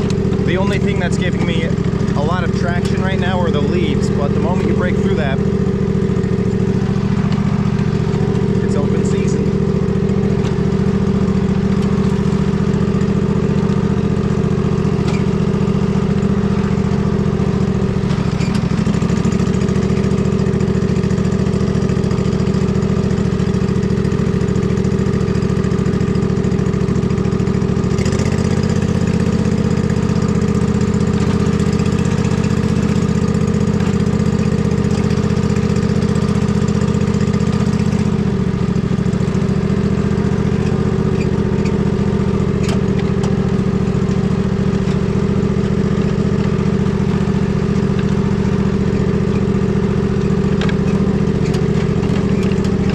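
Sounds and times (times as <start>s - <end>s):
riding mower engine running: 0.0s - 52.9s.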